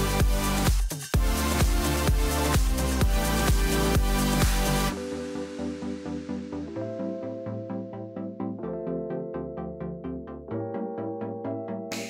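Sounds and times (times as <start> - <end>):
fast pulsing electronic beat: 0.0 - 5.0
synthesizer chords: 0.0 - 12.0.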